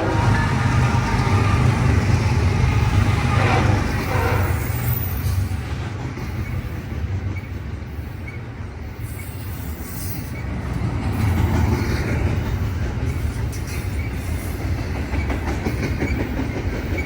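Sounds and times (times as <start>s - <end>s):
train rumbling on rails: 0.0s - 17.0s.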